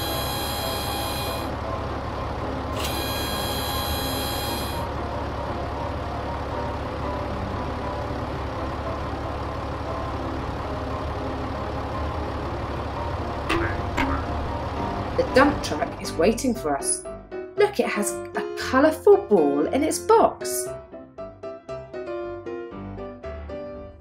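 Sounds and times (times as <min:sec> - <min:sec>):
bulldozer engine running: 0:00.0 - 0:16.9.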